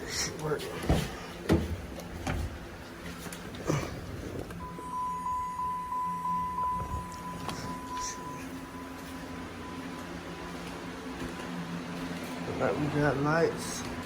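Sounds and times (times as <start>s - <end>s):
pulsing high warning chime: 4.6s - 10.6s.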